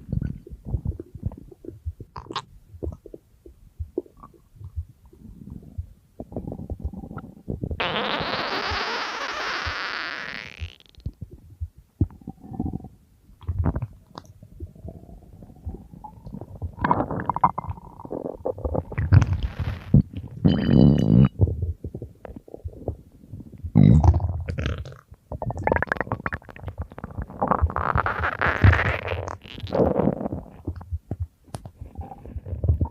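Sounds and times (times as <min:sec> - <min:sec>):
stomach growling and gurgling: 0:00.0 - 0:32.9.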